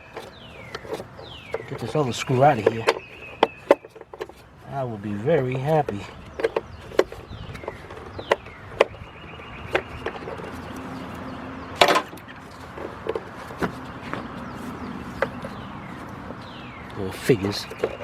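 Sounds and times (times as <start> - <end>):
hand tools clicking on metal: 0.0 - 4.4.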